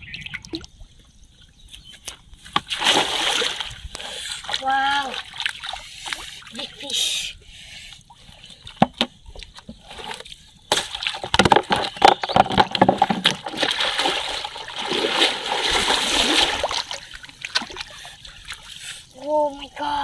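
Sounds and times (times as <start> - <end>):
water splashing: 2.5 - 7.0, 9.8 - 19.3.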